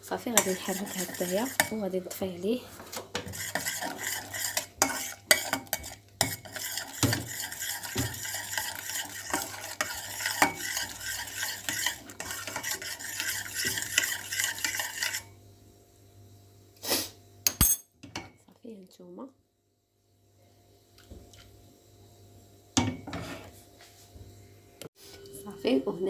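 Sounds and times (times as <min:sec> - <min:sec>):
spoon scraping a pan: 0:00.2 - 0:02.2, 0:02.8 - 0:15.4, 0:22.9 - 0:23.6.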